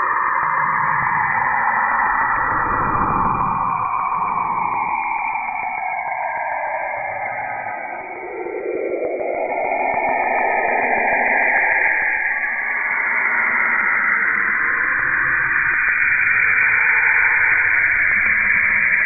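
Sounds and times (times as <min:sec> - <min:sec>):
faint gliding tones: 0:00.8 - 0:12.6
low rumble: 0:01.9 - 0:05.6.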